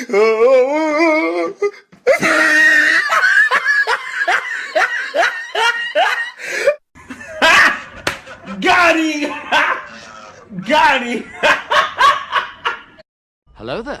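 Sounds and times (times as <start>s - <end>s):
person laughing: 2.1s - 13.0s.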